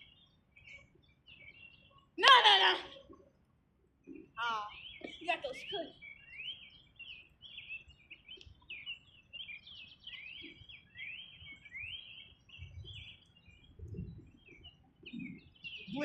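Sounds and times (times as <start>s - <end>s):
birds chirping: 0.0s - 16.0s
soft low rumbles: 12.5s - 16.0s.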